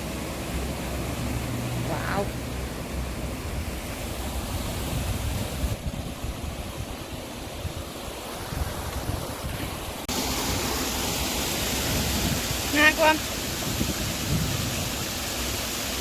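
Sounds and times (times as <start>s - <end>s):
water rushing into lock: 0.0s - 16.0s
wind buffeting microphone: 3.5s - 10.1s, 11.5s - 15.3s.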